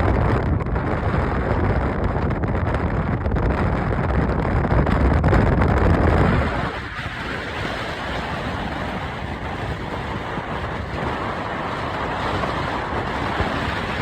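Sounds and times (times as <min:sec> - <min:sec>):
ocean surf washing on beach: 0:06.2 - 0:14.0.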